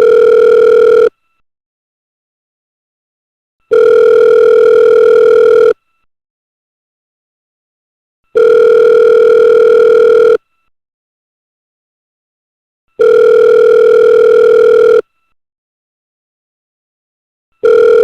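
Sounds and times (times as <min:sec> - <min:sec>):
telephone ringback tone: 0:00.0 - 0:01.1, 0:03.7 - 0:05.8, 0:08.3 - 0:10.4, 0:13.0 - 0:15.0, 0:17.6 - 0:18.0.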